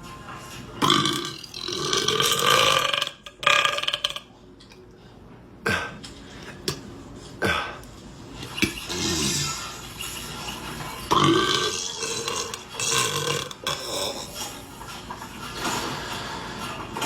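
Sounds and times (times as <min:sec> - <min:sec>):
man burping loudly: 0:00.8 - 0:04.3, 0:11.1 - 0:14.2.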